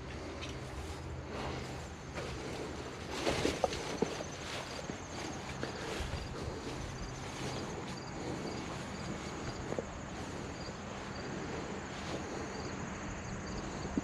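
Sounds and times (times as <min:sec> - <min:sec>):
insects chirping: 0:00.0 - 0:14.0
low engine hum: 0:00.0 - 0:14.0.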